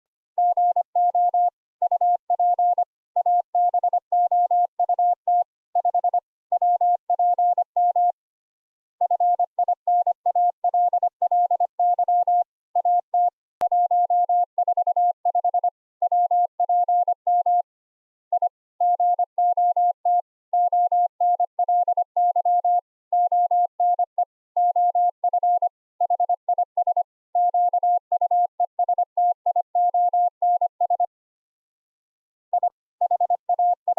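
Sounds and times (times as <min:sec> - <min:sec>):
morse code tone: 0:32.6 - 0:33.9.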